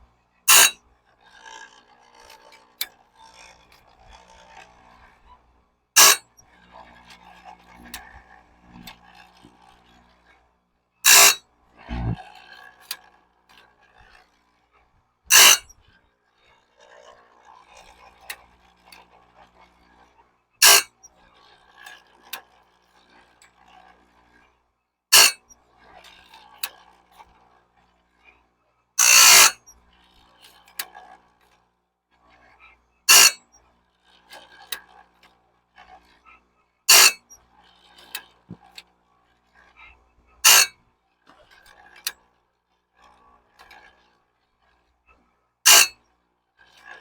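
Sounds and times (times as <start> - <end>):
grinding wheel on saw teeth: 0.5 - 0.8, 6.0 - 6.2, 11.1 - 11.4, 15.3 - 15.7, 20.6 - 21.0, 25.1 - 25.4, 29.0 - 29.6, 33.1 - 33.4, 36.9 - 37.4, 40.4 - 40.7, 45.7 - 46.0.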